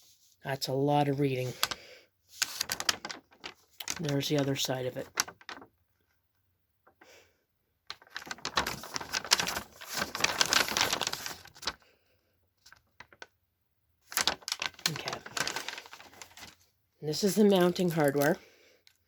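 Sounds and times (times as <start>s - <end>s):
paper and packaging rustling: 1.2s - 5.8s, 7.9s - 11.9s, 12.6s - 13.3s, 14.0s - 19.0s.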